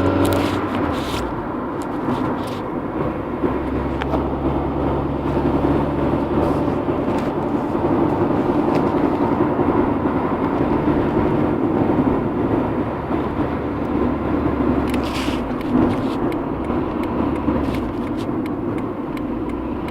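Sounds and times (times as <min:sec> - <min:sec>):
car engine running: 0:00.0 - 0:19.9.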